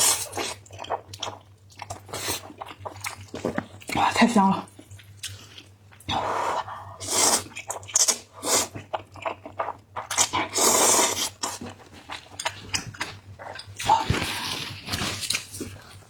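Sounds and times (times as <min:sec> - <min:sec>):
person slurping noodles: 0:06.1 - 0:08.8, 0:09.6 - 0:11.6.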